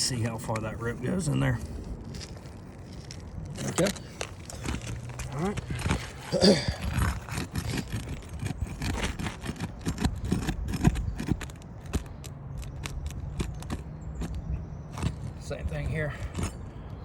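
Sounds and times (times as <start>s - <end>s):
shingle tearing: 0.5s - 17.0s
tool scraping shingles: 3.0s - 16.7s
sharp clicks of shingle prying: 3.5s - 17.0s.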